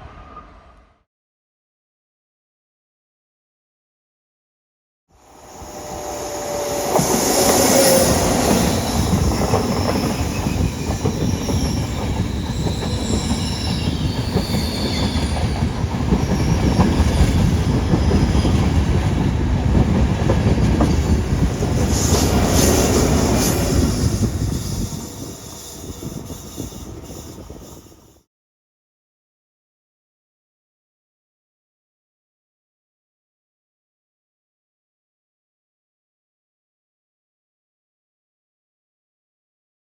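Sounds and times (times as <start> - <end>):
wheel squeal: 5.4 - 18.6, 21.9 - 28.2
train rolling rumble: 5.8 - 28.2.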